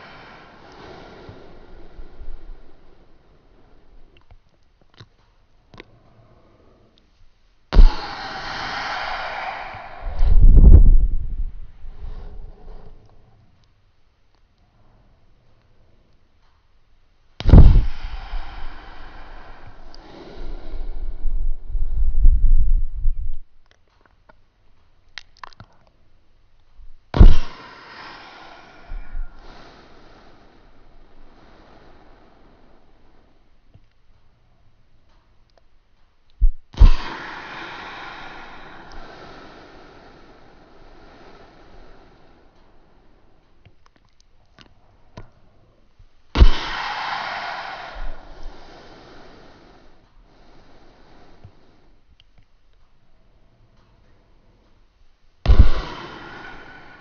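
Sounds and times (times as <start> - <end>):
person hissing like waves: 0.0 - 4.2, 7.7 - 13.4, 17.4 - 22.2, 27.2 - 33.4, 36.8 - 43.4, 46.4 - 52.0, 55.5 - 57.0
mouth clicks: 0.0 - 7.1, 17.4 - 21.3, 25.1 - 26.0, 36.3 - 45.6, 46.4 - 52.9
person imitating ocean waves: 7.8 - 11.3, 46.4 - 51.3
breath thump on microphone: 7.8 - 12.9, 17.4 - 22.7, 27.2 - 27.7, 28.6 - 29.8, 36.4 - 39.4, 46.4 - 49.4, 55.5 - 57.0.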